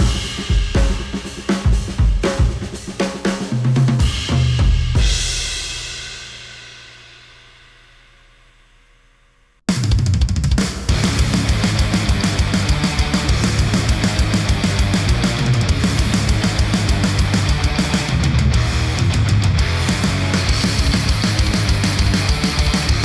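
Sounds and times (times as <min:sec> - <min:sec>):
rock track with drum kit: 0:00.0 - 0:06.9, 0:09.7 - 0:23.0
recorded music playback: 0:10.9 - 0:23.0.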